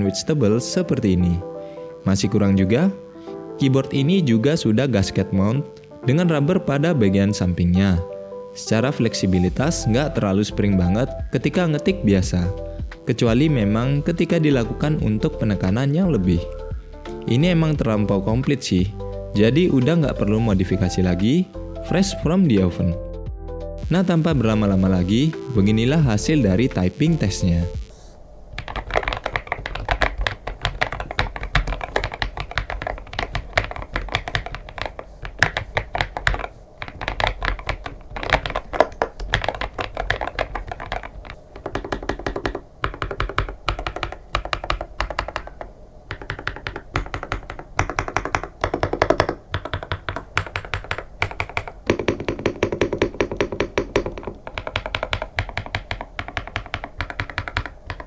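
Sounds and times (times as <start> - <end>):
muffled keyboard typing: 23.9 - 58.0.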